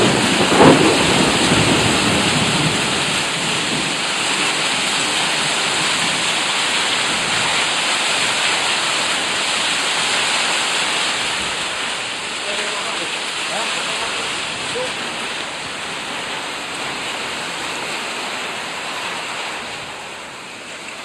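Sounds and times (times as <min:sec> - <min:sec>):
low thunder rumble: 0:00.0 - 0:07.7
hail and rain falling hard: 0:00.0 - 0:21.0.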